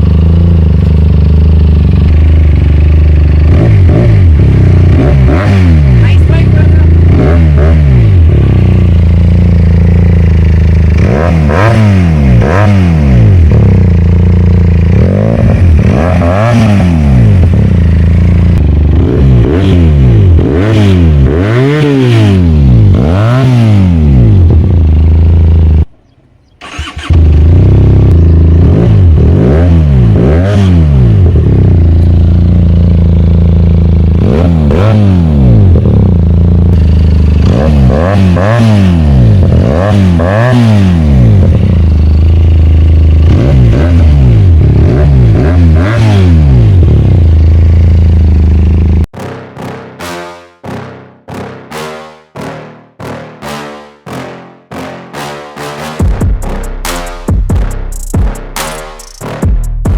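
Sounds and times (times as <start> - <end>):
motorcycle engine revving: 0.0 - 49.2.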